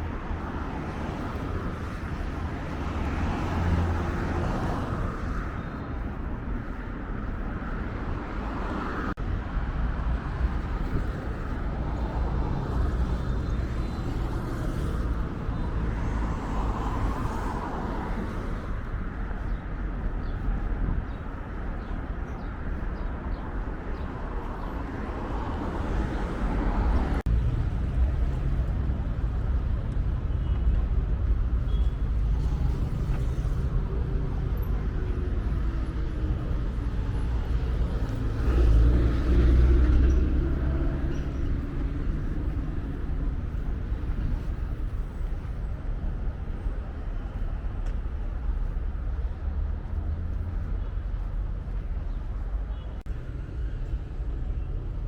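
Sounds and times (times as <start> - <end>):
road traffic rumble: 0.0 - 55.0.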